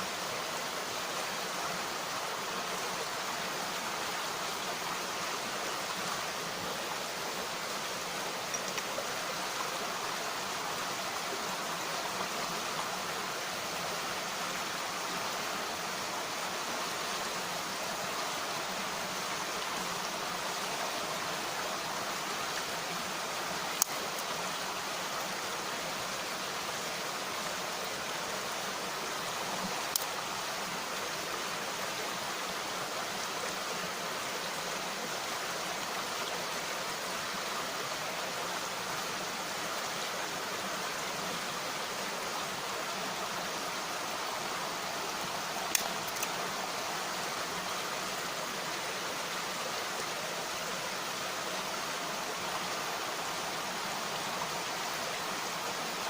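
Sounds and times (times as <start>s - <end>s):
mountain stream rushing: 0.0s - 56.0s
campfire pops: 45.7s - 46.4s.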